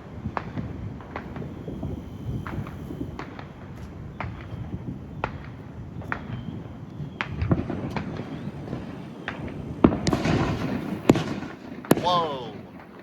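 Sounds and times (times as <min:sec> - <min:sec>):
crackling fireworks: 0:00.0 - 0:13.0
fireworks popping: 0:00.0 - 0:13.0
loud firework bang: 0:07.2 - 0:13.0.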